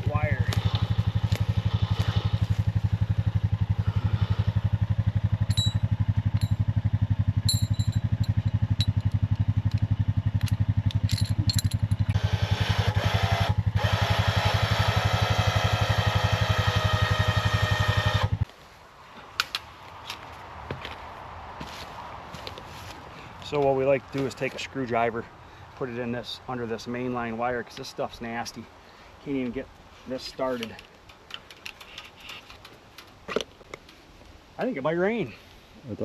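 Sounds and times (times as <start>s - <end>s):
atv engine running: 0.0s - 18.5s.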